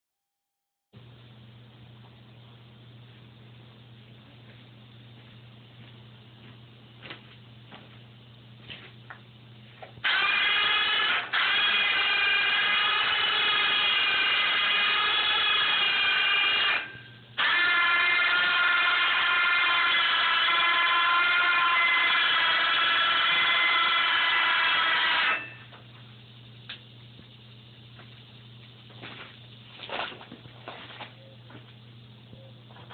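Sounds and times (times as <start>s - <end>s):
power tool motor whining: 10.0s - 25.6s.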